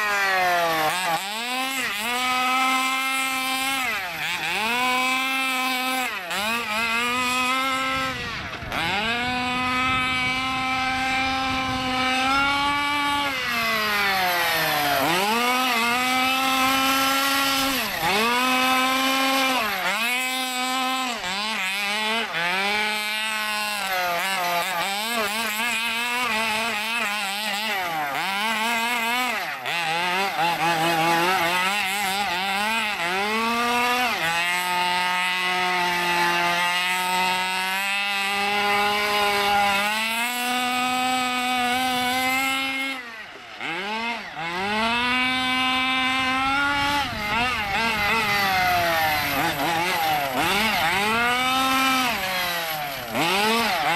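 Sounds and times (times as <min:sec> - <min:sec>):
rc car two-stroke engine revving: 0:00.0 - 0:53.9.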